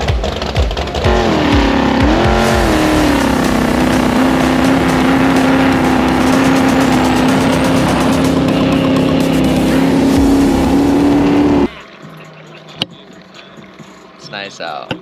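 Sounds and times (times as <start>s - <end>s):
speedboat engine running: 0.0s - 12.0s
rushing water wash: 2.0s - 11.7s.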